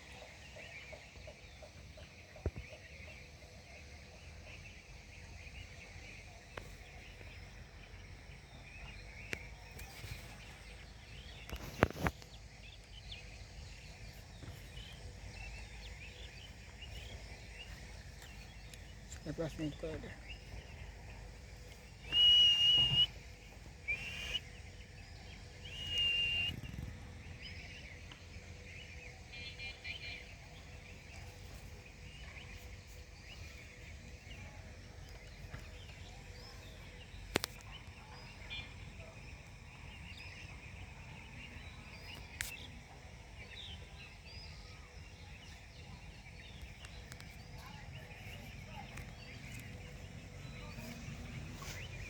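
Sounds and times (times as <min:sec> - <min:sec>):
faint bird chirps: 0:00.0 - 0:52.0
parrot whistling: 0:22.1 - 0:23.1, 0:25.7 - 0:26.6.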